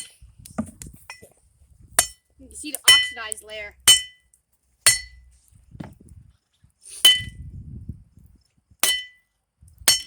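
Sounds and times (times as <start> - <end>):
hammer striking steel on anvil: 3.9 - 4.2, 4.9 - 5.2, 8.8 - 9.2.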